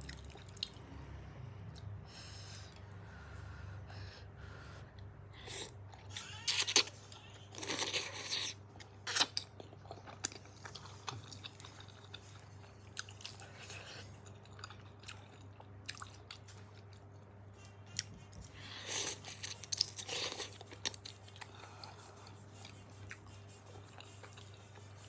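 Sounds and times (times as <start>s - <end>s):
person chewing food: 0.0s - 1.0s, 7.6s - 25.0s
faint low hum: 0.0s - 25.0s.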